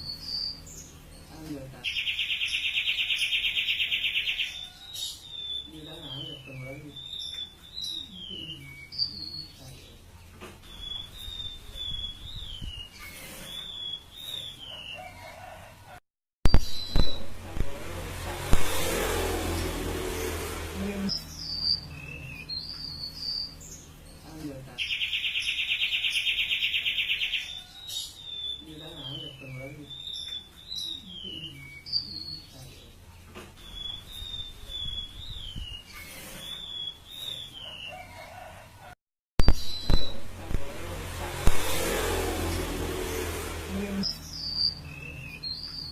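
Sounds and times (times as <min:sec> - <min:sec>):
songbird whistling: 0:10.6 - 0:14.6, 0:33.6 - 0:37.8.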